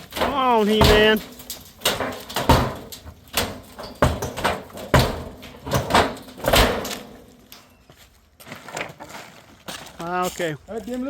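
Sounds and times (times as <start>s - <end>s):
heavy bangs on wooden shed wall: 0.0s - 7.4s.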